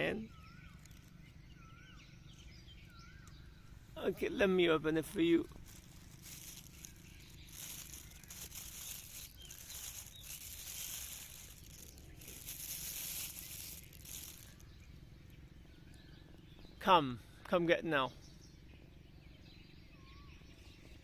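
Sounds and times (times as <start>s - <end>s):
plastic bag rustling and crinkling: 5.0s - 14.6s.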